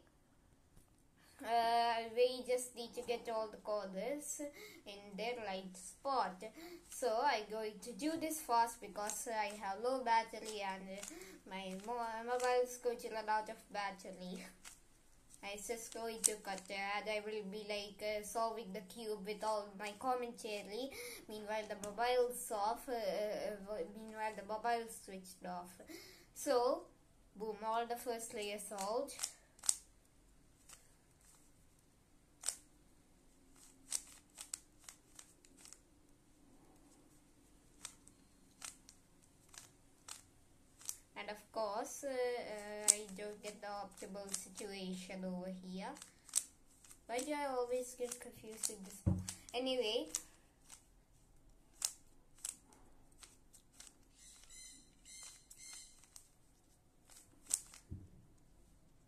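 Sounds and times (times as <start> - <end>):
faint steady hum: 0.0 - 59.0
plastic cube twisting clicks: 8.4 - 9.6, 10.2 - 12.8, 14.4 - 16.7, 28.3 - 29.9, 30.6 - 31.5, 32.4 - 32.7, 33.5 - 35.9, 37.7 - 41.1, 42.8 - 44.7, 45.9 - 50.9, 51.7 - 56.4, 57.0 - 58.0.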